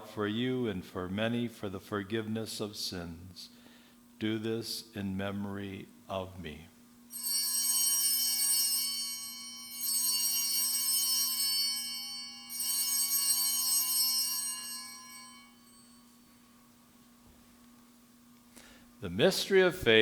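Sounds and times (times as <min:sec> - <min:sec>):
small bells jangling: 0:07.1 - 0:16.3.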